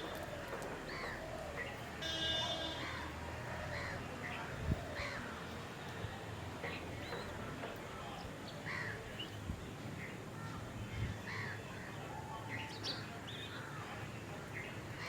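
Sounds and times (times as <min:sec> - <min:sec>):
wild birds chirping and whistling: 0:00.0 - 0:02.0
low background noise: 0:00.0 - 0:15.0.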